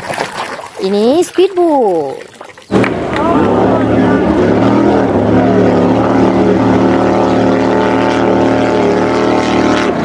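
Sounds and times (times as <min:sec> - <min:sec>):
motorboat engine drone: 0:02.7 - 0:10.0.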